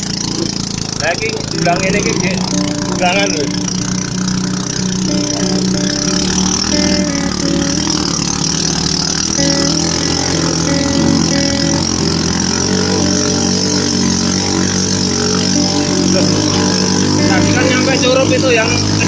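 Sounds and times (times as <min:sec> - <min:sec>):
road noise: 0:00.0 - 0:19.0
vehicle engine running: 0:00.0 - 0:19.0
short high tones: 0:01.4 - 0:04.2, 0:04.8 - 0:19.0.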